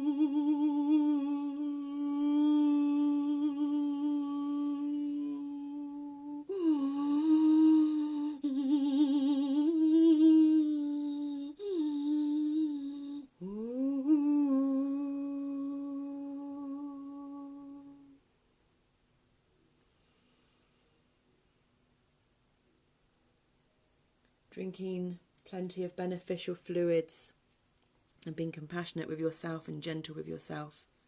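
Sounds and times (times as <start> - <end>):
voice humming long held notes: 0.0 - 18.2.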